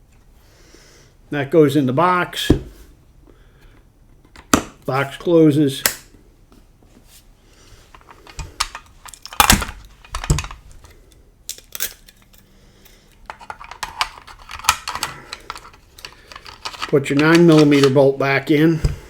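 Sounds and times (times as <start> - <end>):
gun parts clicking and knocking: 7.9 - 18.0.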